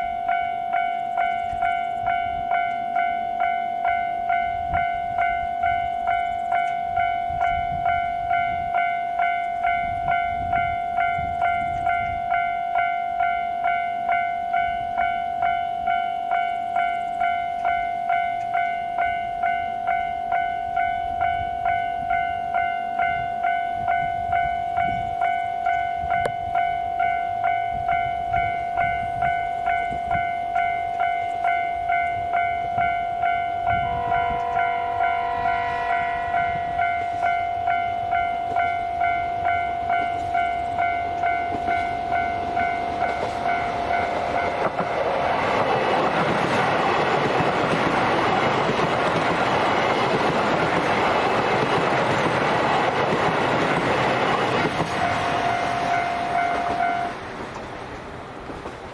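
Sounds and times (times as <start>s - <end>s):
level crossing bell ringing: 0.0s - 44.6s, 53.9s - 57.1s
train wheels rumbling and clattering: 27.6s - 58.9s
train horn blast: 32.4s - 44.5s, 55.0s - 57.2s.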